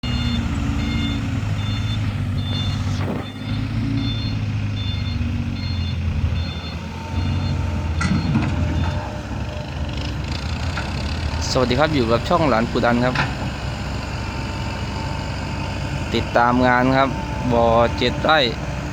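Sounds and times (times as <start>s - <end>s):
heavy engine running: 0.0s - 18.9s
truck reversing alarm beeps: 0.0s - 18.9s.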